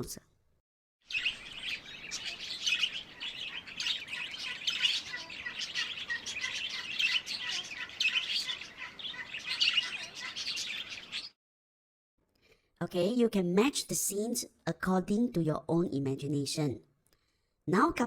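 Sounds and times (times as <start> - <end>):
small birds chirping: 1.0 - 11.4.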